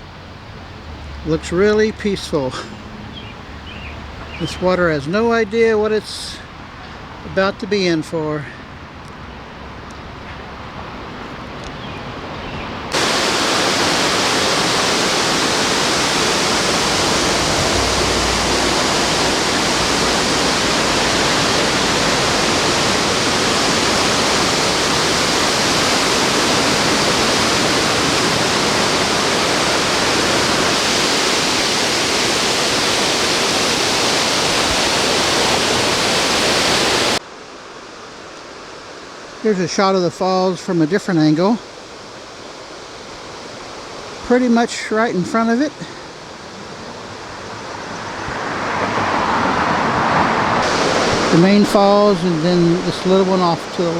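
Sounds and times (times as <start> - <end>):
flowing water: 12.8 - 53.9
waterfall rushing: 12.9 - 53.9.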